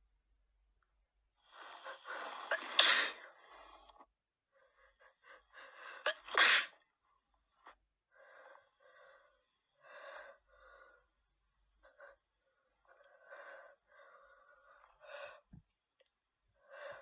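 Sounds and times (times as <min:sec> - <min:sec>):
woman sneezing: 0:06.1 - 0:06.8.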